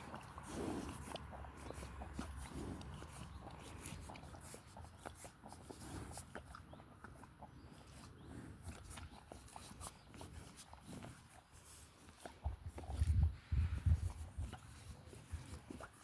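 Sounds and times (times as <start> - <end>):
horse breathing softly: 0.0 - 4.4, 10.4 - 16.0
horse chewing: 0.0 - 16.0.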